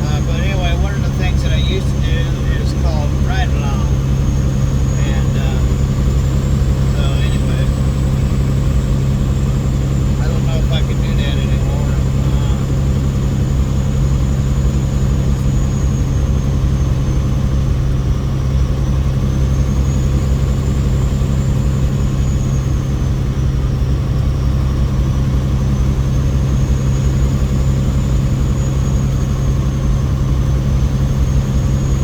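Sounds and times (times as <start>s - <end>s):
faint high whine: 0.0s - 17.8s
diesel engine droning: 0.0s - 32.0s.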